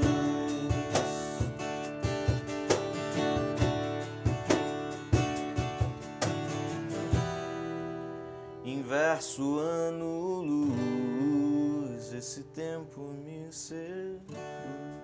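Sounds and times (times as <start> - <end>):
guitar strumming: 0.0 - 15.0.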